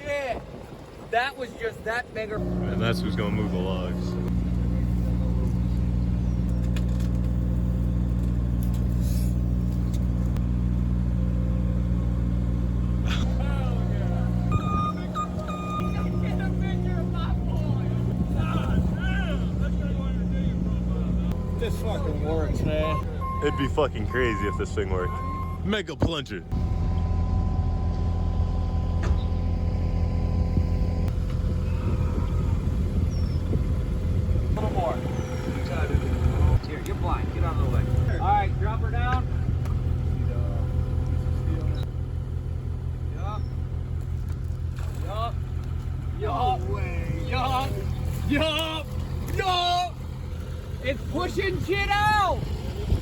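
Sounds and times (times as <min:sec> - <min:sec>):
steady whine: 0:02.3 - 0:41.8
excavator diesel engine running: 0:02.4 - 0:44.7.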